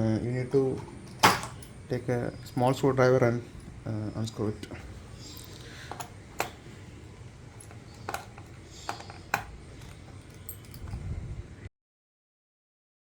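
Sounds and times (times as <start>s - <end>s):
low steady hum: 0.0s - 11.7s
screwdriver clicks and taps: 7.6s - 10.0s.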